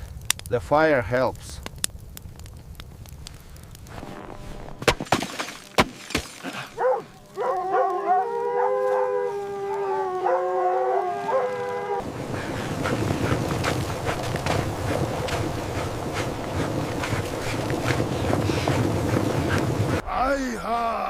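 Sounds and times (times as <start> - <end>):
wood fire crackling: 0.0 - 21.0
dogs howling: 6.7 - 12.0.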